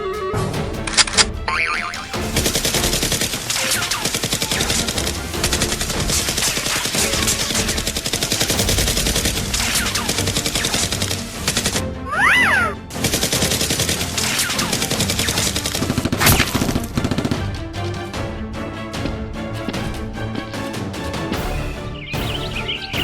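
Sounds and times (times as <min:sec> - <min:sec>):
background music: 0:00.0 - 0:23.0
rapid gunfire: 0:02.0 - 0:11.8, 0:12.9 - 0:17.4.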